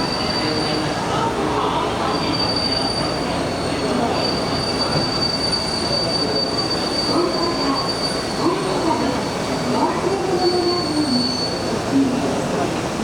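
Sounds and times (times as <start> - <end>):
high wheel squeal: 0.0 - 0.9, 2.0 - 9.6, 10.4 - 11.8
train cars rumbling: 0.0 - 13.0.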